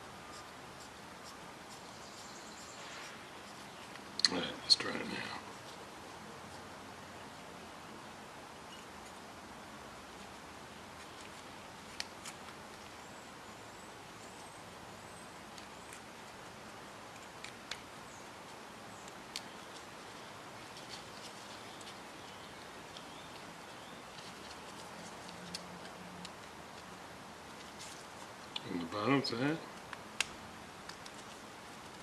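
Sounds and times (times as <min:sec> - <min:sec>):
quiet steady hiss: 0:00.0 - 0:32.0.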